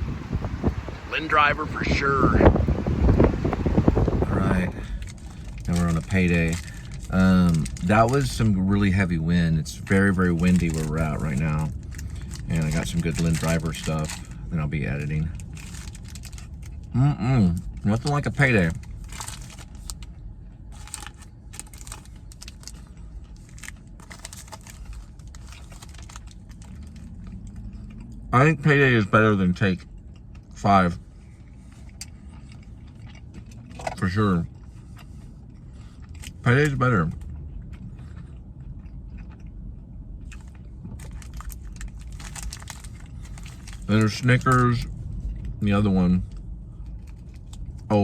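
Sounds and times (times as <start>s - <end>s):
low steady rumble: 0.0s - 48.0s
candy wrapper crinkling: 4.4s - 8.5s, 9.7s - 16.9s, 17.7s - 27.5s, 40.4s - 44.9s.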